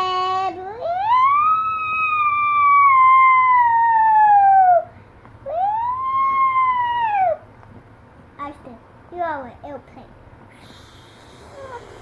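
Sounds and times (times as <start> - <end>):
child imitating a siren: 0.7 - 4.9, 5.5 - 7.4.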